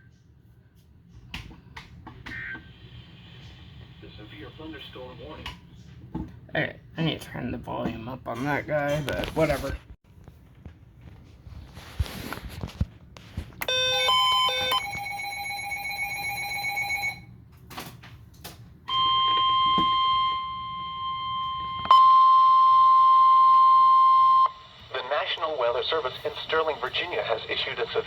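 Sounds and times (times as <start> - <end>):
steady weather radio alarm tone: 13.7 - 17.2, 18.9 - 28.0.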